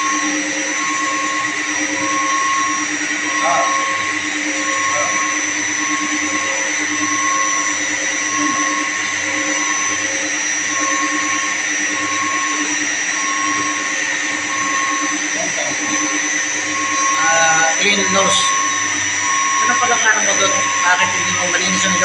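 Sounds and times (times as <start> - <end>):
electric motor machinery humming: 0.0 - 22.0.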